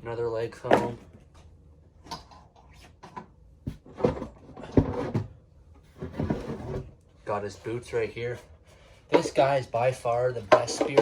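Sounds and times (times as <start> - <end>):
knocks and thumps in cardboard box: 3.6 - 6.9.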